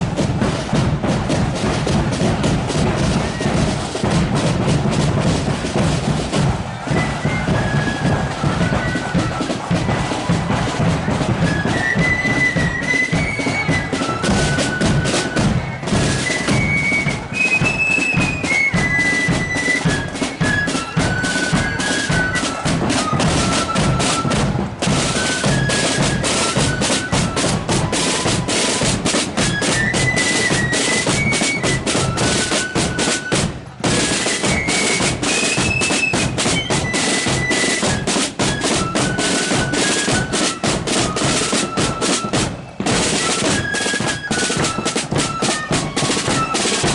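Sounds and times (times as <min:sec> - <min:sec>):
massed flutes playing tune: 0:00.0 - 0:46.9
snare drum rolls: 0:00.0 - 0:46.9.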